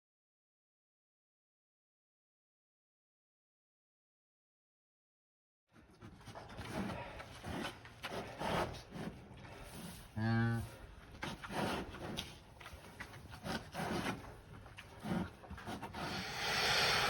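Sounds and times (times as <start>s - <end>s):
cow lowing: 14.9s - 17.0s.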